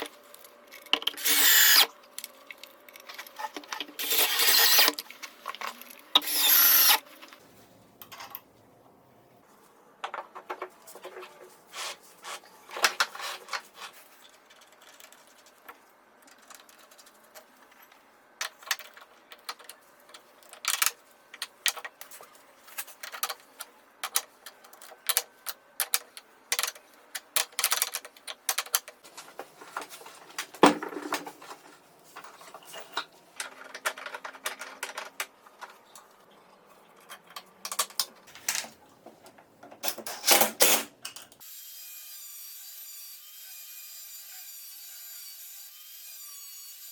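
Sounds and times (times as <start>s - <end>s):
parts and tools clicking and knocking: 0.0s - 7.4s, 14.2s - 36.1s, 36.9s - 41.4s.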